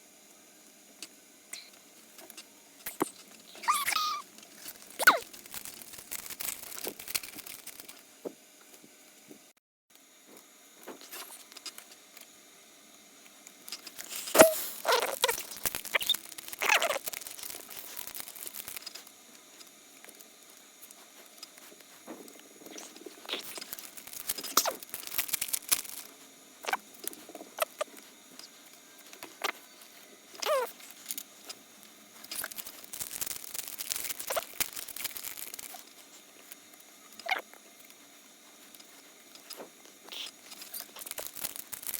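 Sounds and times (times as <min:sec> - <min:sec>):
cards rustling: 0:04.5 - 0:08.0, 0:13.9 - 0:19.0, 0:22.7 - 0:26.1, 0:32.2 - 0:36.6, 0:40.4 - 0:41.9
wrapper crinkling and tearing: 0:04.5 - 0:08.0, 0:13.8 - 0:19.1, 0:22.7 - 0:26.1, 0:32.2 - 0:36.2, 0:40.2 - 0:41.9.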